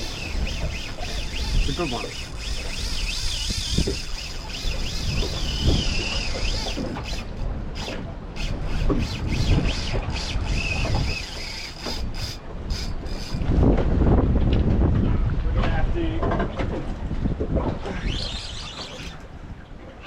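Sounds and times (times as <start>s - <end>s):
fishing reel drag squealing: 0.0s - 13.6s, 17.8s - 19.3s
wind buffeting microphone: 0.0s - 20.0s.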